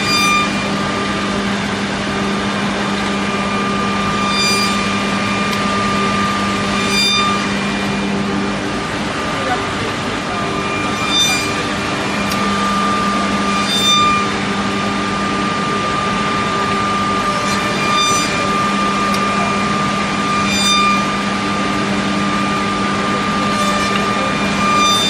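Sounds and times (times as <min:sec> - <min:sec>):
high-pitched machine whine: 0:00.0 - 0:25.0
machine motor hum: 0:00.0 - 0:25.0.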